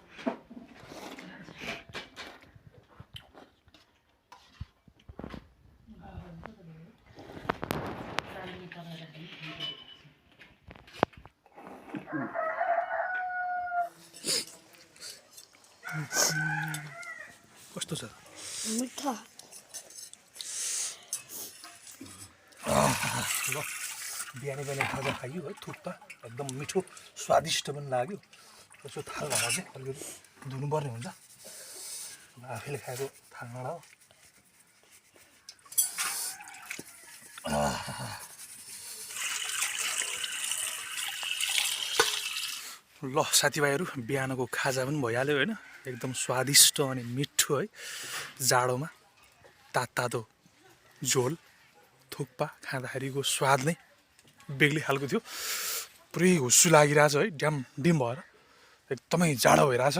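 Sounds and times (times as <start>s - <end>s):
water running and splashing: 21.2s - 33.2s, 35.6s - 42.9s.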